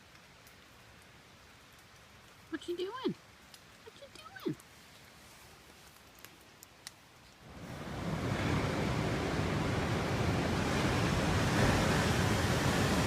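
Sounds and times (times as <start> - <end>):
faint clicks: 3.4 - 4.7, 6.0 - 7.0
steady rushing noise: 7.5 - 13.0.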